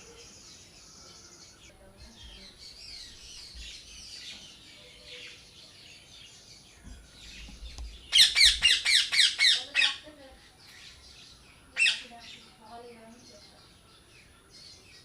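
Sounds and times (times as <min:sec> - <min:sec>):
faint birdsong twittering: 0:00.0 - 0:15.0.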